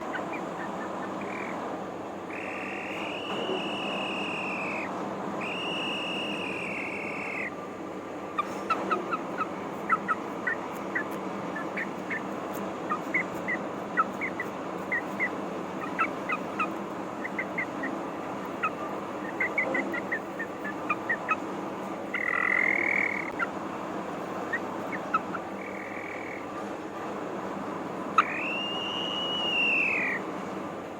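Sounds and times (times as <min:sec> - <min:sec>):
rooster high calls: 0:02.3 - 0:07.6, 0:08.4 - 0:23.6, 0:28.2 - 0:30.2.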